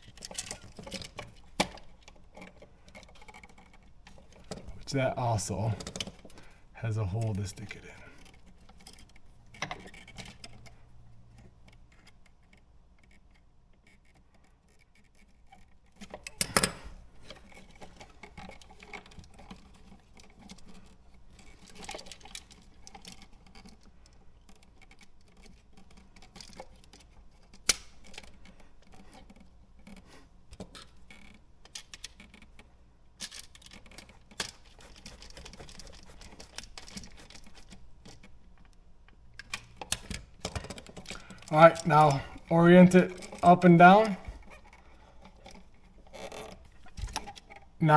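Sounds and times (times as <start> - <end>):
clicks scratches and rattles: 0.0 - 47.8.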